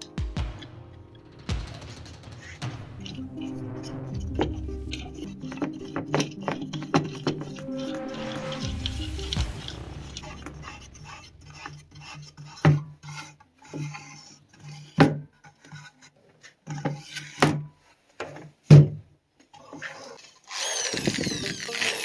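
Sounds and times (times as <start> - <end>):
wood rubbed and scraped: 1.8 - 17.4
power tool motor running: 20.5 - 22.0.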